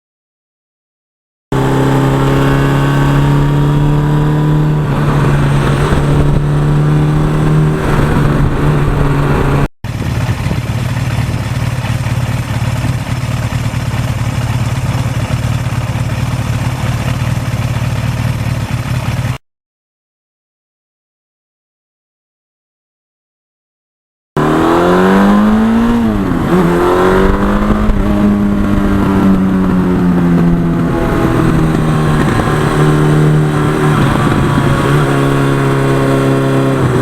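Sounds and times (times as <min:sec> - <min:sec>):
motorcycle engine running: 0:01.5 - 0:19.4, 0:24.4 - 0:37.0.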